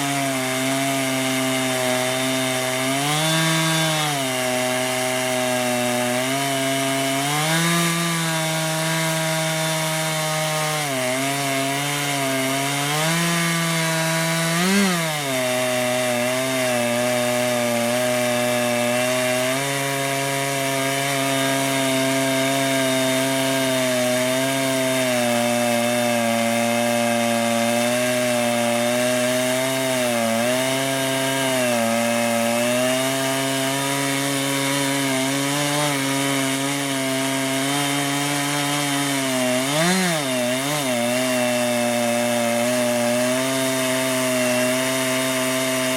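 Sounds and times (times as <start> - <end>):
chainsaw cutting log: 0.0 - 45.9.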